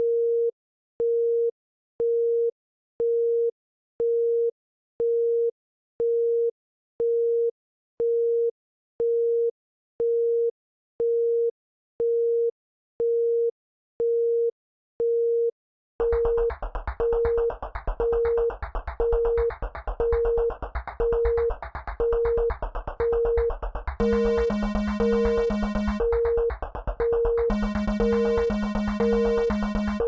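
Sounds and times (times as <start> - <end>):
electronic beep tone: 22.0 - 30.0.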